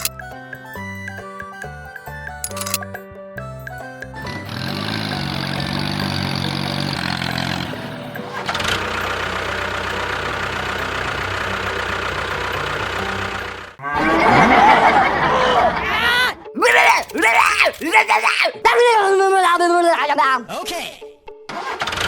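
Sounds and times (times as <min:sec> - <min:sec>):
engine starting and running: 0:00.0 - 0:00.2, 0:02.4 - 0:03.0, 0:04.2 - 0:14.8, 0:21.5 - 0:22.0.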